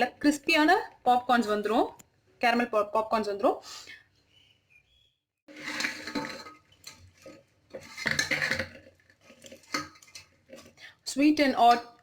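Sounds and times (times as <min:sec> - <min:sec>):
metal spoon scraping metal pot: 0:05.5 - 0:11.0.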